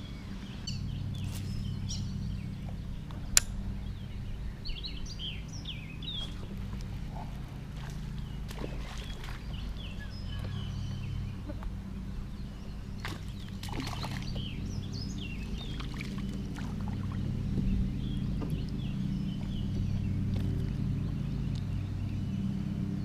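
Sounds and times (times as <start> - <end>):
bird chirps: 0.0 - 7.3
steady low drone: 0.0 - 23.0.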